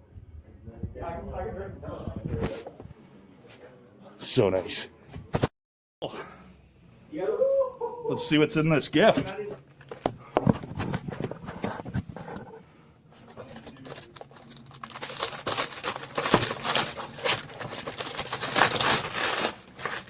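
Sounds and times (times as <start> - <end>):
wrapping paper crinkling and tearing: 13.2 - 20.0
gift wrap handling clicks: 13.3 - 20.0.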